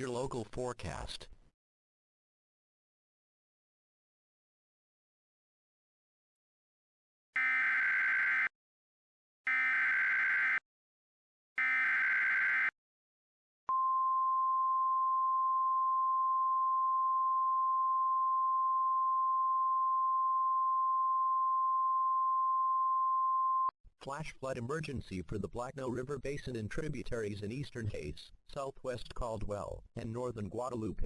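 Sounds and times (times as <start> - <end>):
steady alarm tone: 7.4 - 8.5, 9.5 - 10.6, 11.6 - 12.7.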